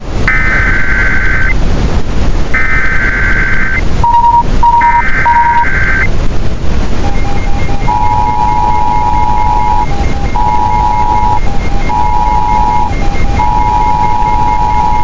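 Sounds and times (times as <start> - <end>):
loud rushing noise: 0.0 - 15.0
raspy data bursts: 0.3 - 1.6, 2.6 - 6.1, 7.0 - 15.0
short beeps: 2.6 - 6.1, 7.0 - 15.0.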